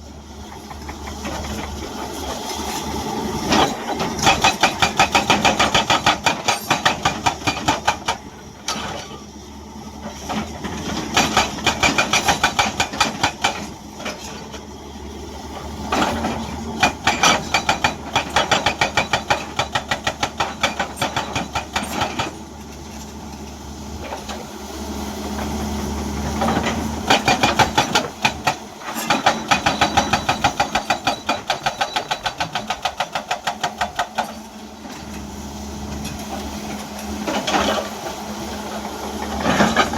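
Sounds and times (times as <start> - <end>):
diesel engine running: 0.0 - 39.9
hydraulic breaker hammering rock: 3.5 - 9.2, 10.0 - 14.6, 15.9 - 22.8, 26.2 - 35.2, 38.6 - 39.9.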